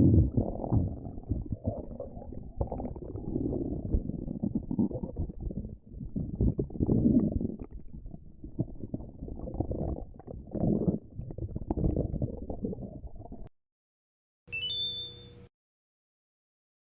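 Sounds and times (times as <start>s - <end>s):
stomach growling and gurgling: 0.0s - 13.5s.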